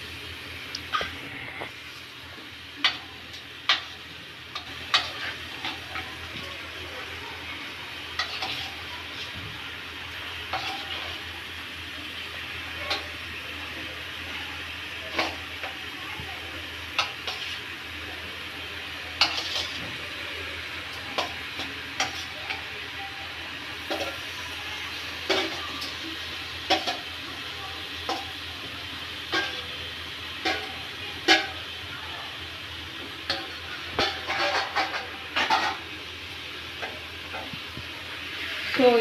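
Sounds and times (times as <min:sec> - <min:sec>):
chicken sizzling in oil: 0:00.0 - 0:39.0
spoon scraping a pan: 0:03.7 - 0:06.4, 0:08.1 - 0:09.3, 0:10.5 - 0:11.2, 0:17.0 - 0:17.7, 0:19.2 - 0:19.9, 0:21.1 - 0:22.6, 0:33.3 - 0:35.8.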